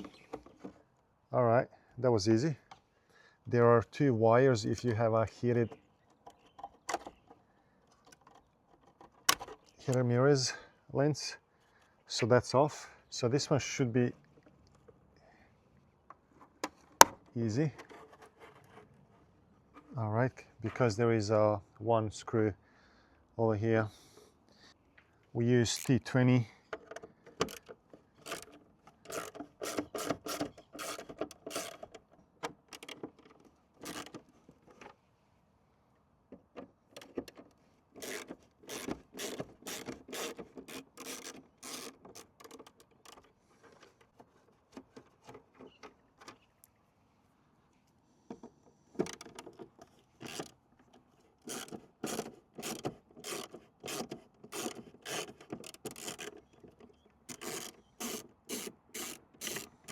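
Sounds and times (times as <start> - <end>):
screwdriver clicking and scraping: 25.7 - 26.0, 26.7 - 32.1, 32.7 - 34.3, 37.0 - 45.9, 49.0 - 59.9.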